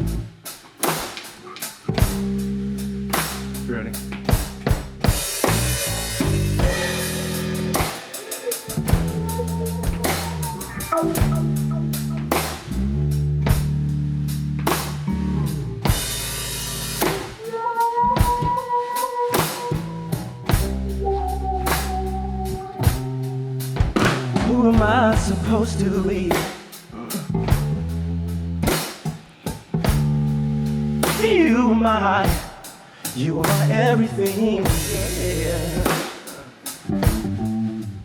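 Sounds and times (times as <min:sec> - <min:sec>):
electric bass: 0:00.0 - 0:00.4, 0:01.9 - 0:17.4, 0:19.7 - 0:32.6, 0:33.2 - 0:36.0, 0:36.9 - 0:38.0
drum kit: 0:00.0 - 0:38.0
electric guitar long notes: 0:05.8 - 0:13.1.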